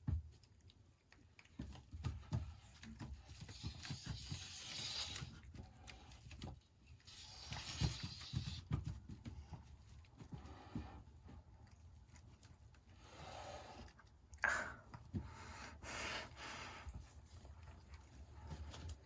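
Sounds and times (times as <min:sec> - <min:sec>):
hissing rustle: 0:03.3 - 0:06.3, 0:06.9 - 0:08.7.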